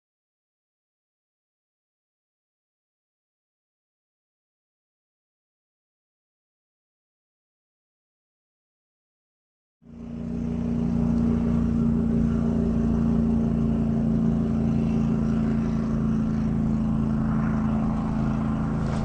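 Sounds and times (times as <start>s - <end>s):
boat motor running: 9.9s - 19.0s.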